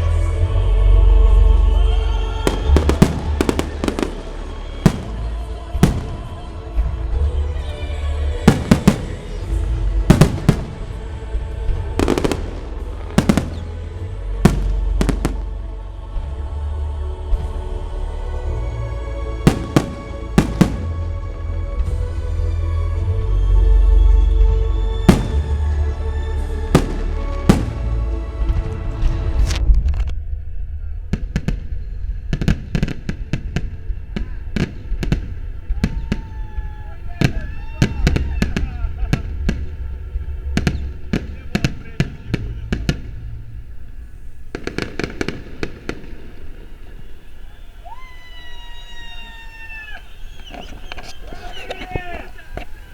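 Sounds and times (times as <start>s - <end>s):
music: 0.0s - 52.9s
low rumble: 1.1s - 17.9s
fireworks crackle: 2.3s - 16.3s, 19.2s - 21.9s, 25.0s - 29.6s, 32.9s - 52.9s
fireworks bangs: 2.3s - 16.4s, 19.2s - 22.0s, 25.0s - 29.5s, 32.5s - 52.9s.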